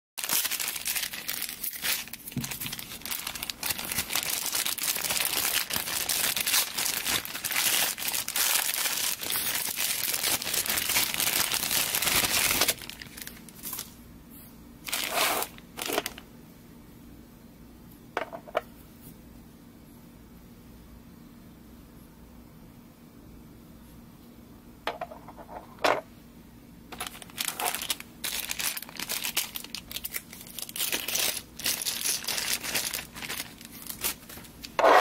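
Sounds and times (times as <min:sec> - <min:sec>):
wrapping crinkling and crackling: 0:00.2 - 0:14.0, 0:14.8 - 0:16.2, 0:26.9 - 0:35.0.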